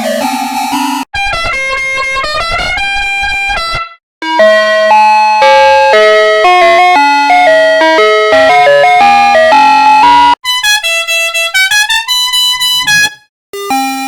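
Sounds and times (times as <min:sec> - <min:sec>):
horn stepped tones over wail: 0:01.2 - 0:04.0, 0:10.5 - 0:13.3
loud musical horn tune: 0:01.2 - 0:04.6, 0:10.1 - 0:14.0.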